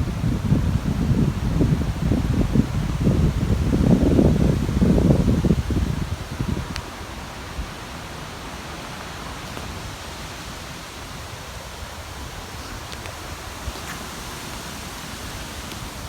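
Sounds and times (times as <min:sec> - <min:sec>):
wind rumble on microphone: 0:00.0 - 0:16.0
wind rustling trees: 0:00.0 - 0:16.0.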